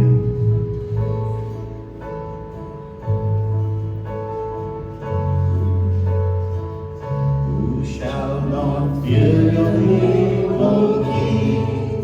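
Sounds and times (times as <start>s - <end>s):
deep bass line: 0.0s - 12.0s
keyboard chords: 0.0s - 12.0s.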